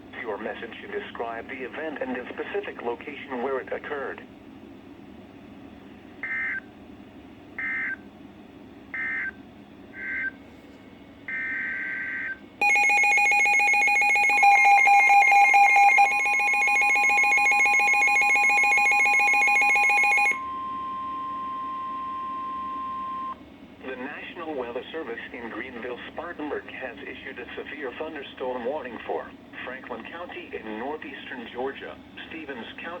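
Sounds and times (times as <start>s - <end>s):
loud steady alert signal: 11.3s - 23.4s.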